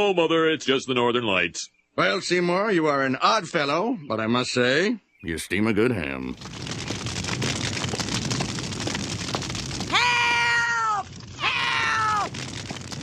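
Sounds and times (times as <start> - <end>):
fire crackling: 5.3 - 13.0.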